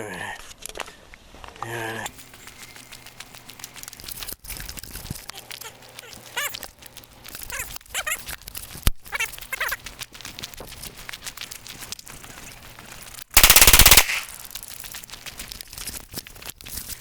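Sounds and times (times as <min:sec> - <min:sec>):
crackle of small clicks: 0:02.1 - 0:17.0
sharp crack: 0:13.4 - 0:14.5.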